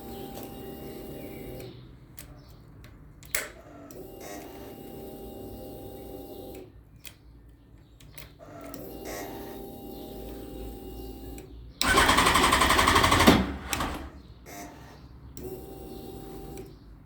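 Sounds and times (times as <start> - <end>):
electric starter whining: 11.8 - 14.3
starter clicks: 11.8 - 14.3.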